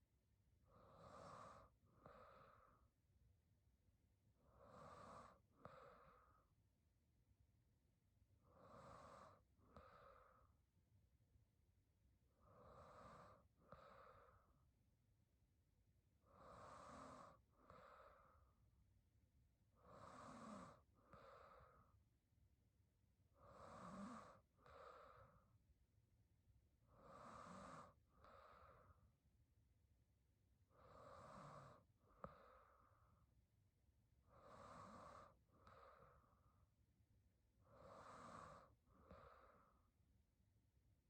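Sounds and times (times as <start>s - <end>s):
woman breathing in sleep: 0.6s - 3.2s, 4.2s - 6.8s, 8.4s - 11.1s, 12.1s - 14.8s, 16.1s - 19.0s, 19.6s - 22.3s, 23.2s - 26.0s, 26.6s - 40.4s.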